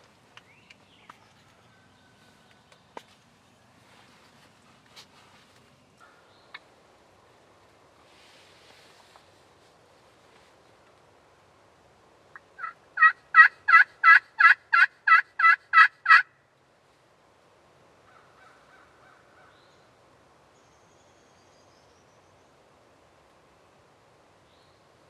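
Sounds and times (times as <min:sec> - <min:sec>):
turkey yelping: 0:12.4 - 0:16.3.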